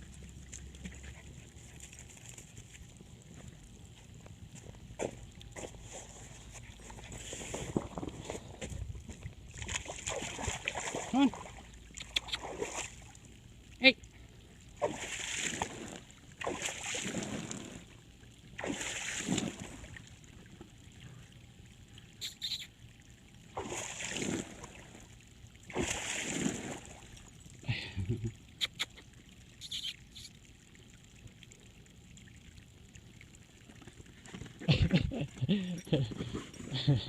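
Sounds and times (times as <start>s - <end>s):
dogs splashing through water: 0.0s - 13.3s, 14.7s - 20.2s, 23.5s - 27.4s.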